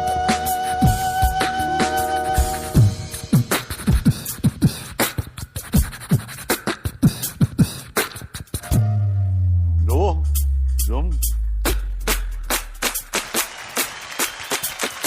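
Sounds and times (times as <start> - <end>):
electronic drum beat: 2.4 - 8.8, 9.9 - 15.0.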